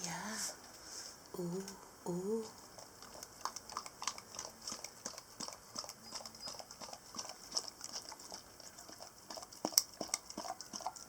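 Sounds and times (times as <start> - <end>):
dog lapping wet food: 2.6 - 11.0.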